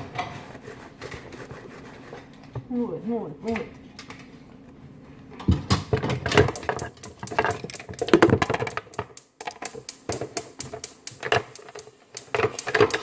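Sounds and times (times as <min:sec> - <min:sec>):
sticky slime clicks and smacks: 0:06.4 - 0:13.0.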